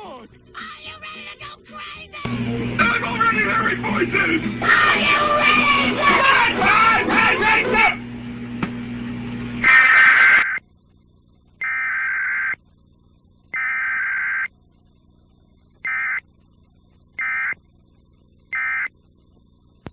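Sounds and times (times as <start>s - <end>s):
harsh electronic data bursts: 4.6s - 8.0s, 9.6s - 10.6s.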